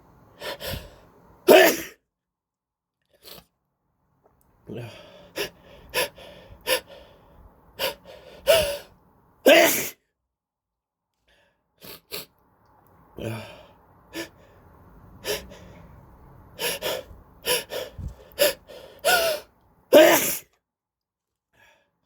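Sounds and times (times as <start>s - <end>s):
sharp breaths before sneezing: 0.4s - 1.9s, 4.9s - 8.9s, 16.6s - 20.5s
person sneezing: 1.5s - 2.0s, 9.5s - 10.0s, 18.4s - 20.5s.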